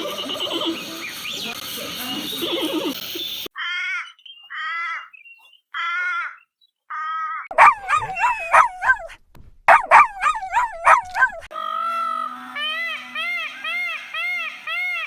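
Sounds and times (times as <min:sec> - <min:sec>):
dog whining: 0:07.5 - 0:11.5
dog yelping: 0:07.5 - 0:11.5.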